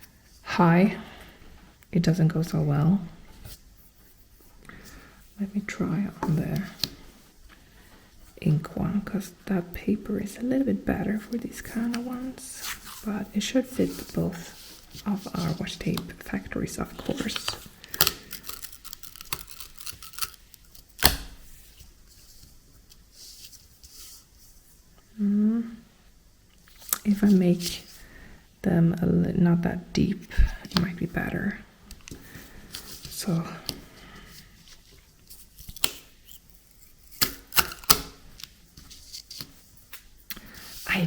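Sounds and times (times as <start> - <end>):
tape being pulled and torn: 17.4 - 21.4, 35.3 - 38.5.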